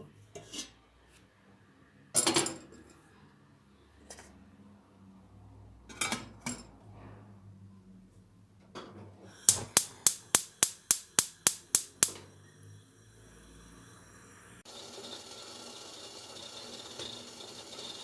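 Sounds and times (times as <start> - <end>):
sharp evenly spaced knocks: 9.6 - 12.2.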